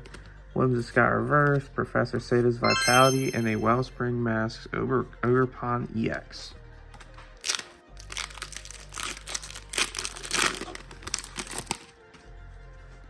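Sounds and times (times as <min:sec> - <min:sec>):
foil wrapper crinkling: 0:07.4 - 0:11.9.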